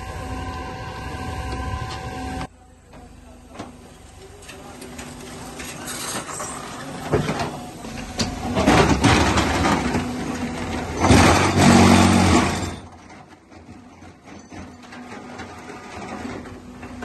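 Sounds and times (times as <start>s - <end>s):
loud machine noise: 0.0s - 2.5s, 8.2s - 13.0s
machinery motor hum: 0.0s - 5.7s.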